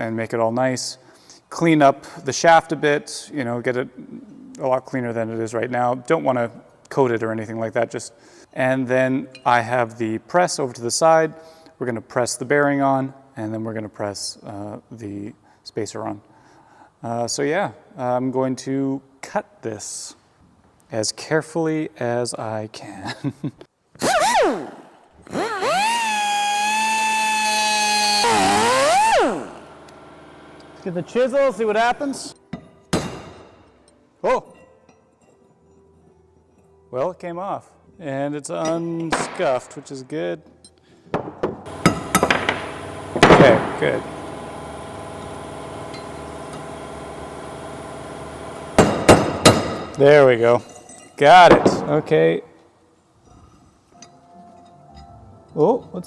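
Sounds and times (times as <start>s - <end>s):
power grinder whining: 24.1s - 30.9s, 41.7s - 49.5s
machine hum: 24.5s - 31.2s, 41.7s - 50.0s
hammer strikes on metal: 32.6s - 33.6s, 41.2s - 43.6s, 48.8s - 50.0s.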